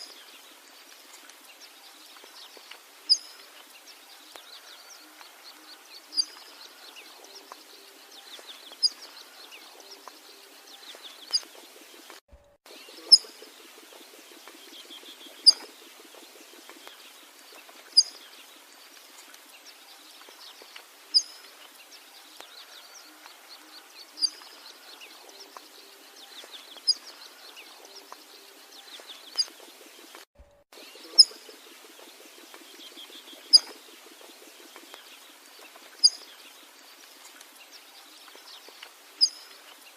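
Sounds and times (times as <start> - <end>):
faint bird calls and chatter: 0.0 - 39.9
sharp high bird chirp: 14.8 - 15.7.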